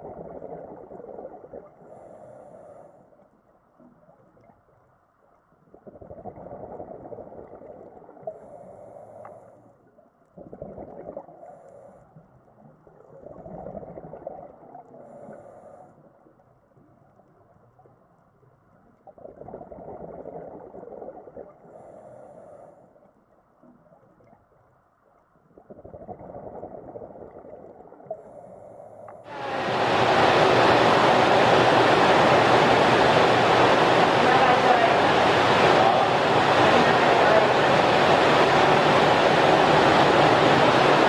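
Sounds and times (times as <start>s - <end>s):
bubbling underwater: 0.0s - 1.8s, 5.7s - 8.3s, 10.4s - 11.4s, 12.9s - 14.9s, 19.0s - 21.6s, 25.6s - 28.2s
diver breathing through regulator: 1.8s - 3.0s, 15.0s - 16.0s, 21.7s - 22.9s
regulator hissing: 29.3s - 41.0s.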